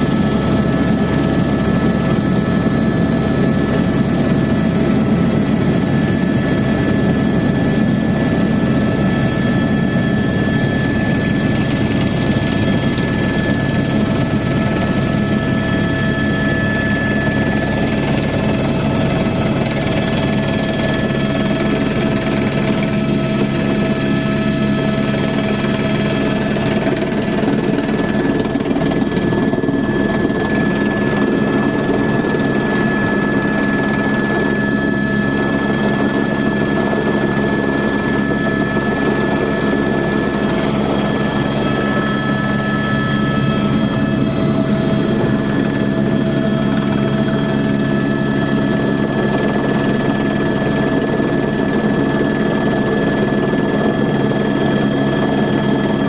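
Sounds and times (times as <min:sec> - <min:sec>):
helicopter engine and rotor rumble: 0:00.0 - 0:56.0
whining tones: 0:38.0 - 0:48.7.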